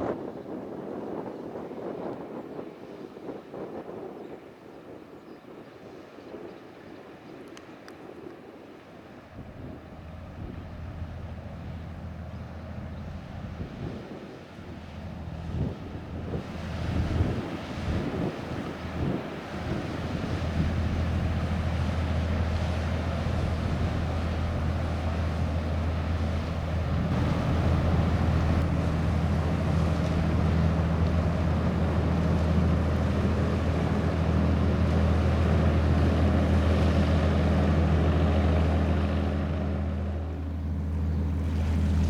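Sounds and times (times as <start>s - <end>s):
ship engine drone: 9.5s - 42.0s.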